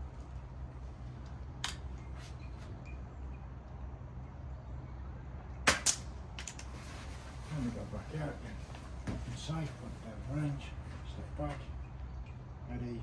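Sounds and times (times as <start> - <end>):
steady low hum: 0.0 - 13.0
air rifle shot cracks: 5.7 - 6.1.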